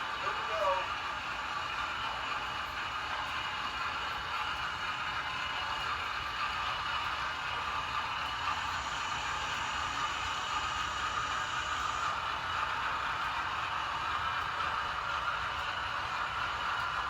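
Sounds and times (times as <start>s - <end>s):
model train whirring and rattling: 0.0s - 17.0s.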